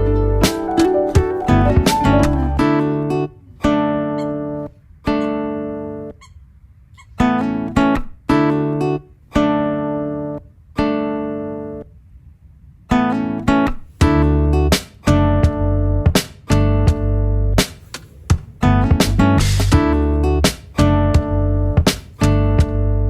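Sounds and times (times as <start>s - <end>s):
strummed acoustic guitar chords: 0.0s - 6.1s, 12.9s - 23.0s.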